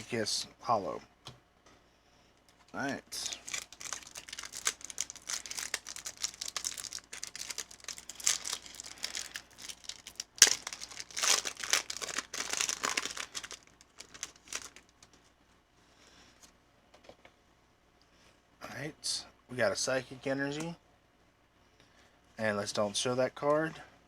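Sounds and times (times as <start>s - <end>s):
foil wrapper crinkling and tearing: 2.6s - 15.2s.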